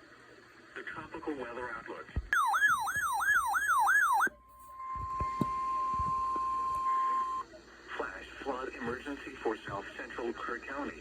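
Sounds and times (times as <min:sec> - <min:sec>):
steady attention tone: 0:02.3 - 0:05.0
warbling siren alert tone: 0:02.4 - 0:04.3.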